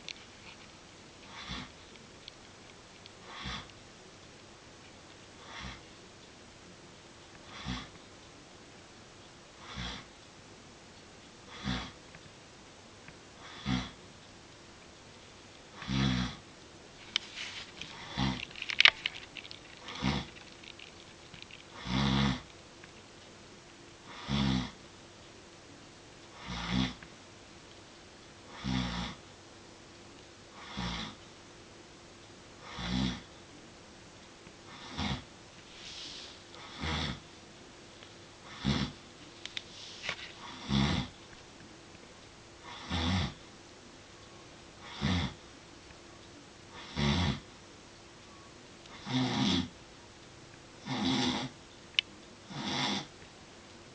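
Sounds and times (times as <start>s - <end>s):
faint steady hum: 0.0s - 53.9s
person snoring: 3.2s - 3.7s, 7.5s - 7.9s, 9.6s - 10.1s, 11.5s - 12.0s, 13.4s - 14.0s, 15.8s - 16.4s, 17.9s - 18.4s, 19.9s - 20.3s, 21.8s - 22.5s, 24.1s - 24.8s, 26.4s - 27.0s, 28.5s - 29.2s, 30.6s - 31.2s, 32.6s - 33.3s, 34.7s - 37.2s, 38.4s - 39.0s, 40.4s - 41.2s, 42.6s - 43.4s, 44.8s - 45.4s, 46.8s - 47.4s, 48.9s - 49.7s, 50.8s - 51.6s, 52.5s - 53.1s.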